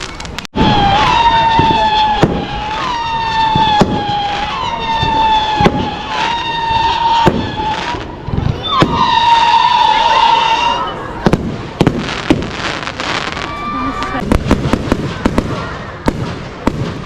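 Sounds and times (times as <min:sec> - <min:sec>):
high whistling tone: 0:00.0 - 0:11.2
fireworks banging: 0:00.0 - 0:17.0.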